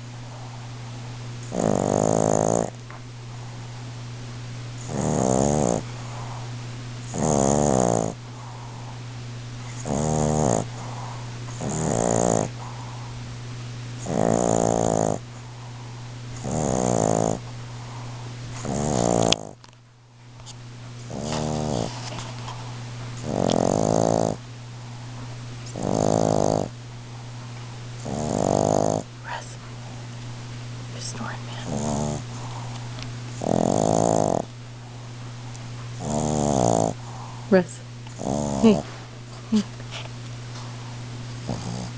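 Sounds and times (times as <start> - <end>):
dog snoring: 0.0 - 3.5, 4.8 - 9.0, 9.6 - 13.2, 14.0 - 19.7, 21.0 - 24.4, 25.6 - 26.8, 28.0 - 29.6, 31.0 - 34.5, 36.0 - 39.0, 41.3 - 41.9.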